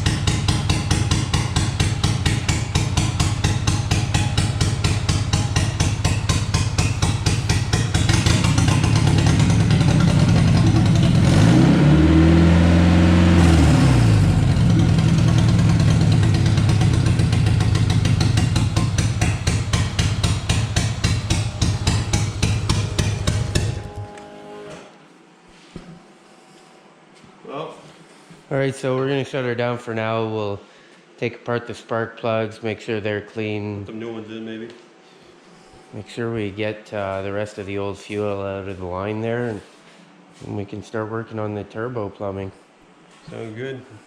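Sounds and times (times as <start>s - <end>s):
car engine running unevenly: 0.0s - 24.1s.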